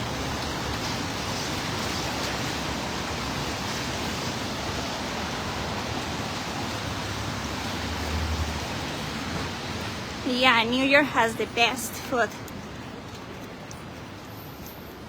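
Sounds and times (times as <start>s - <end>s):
heavy rain on street: 0.0s - 15.0s
low rumble of traffic: 0.0s - 15.0s.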